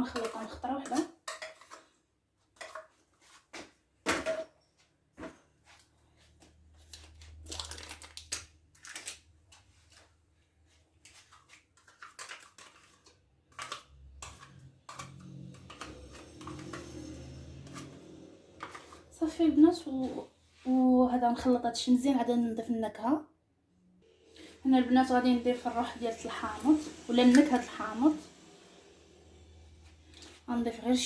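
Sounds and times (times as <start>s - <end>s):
spoon and pots knocking bowl: 13.6s - 19.1s.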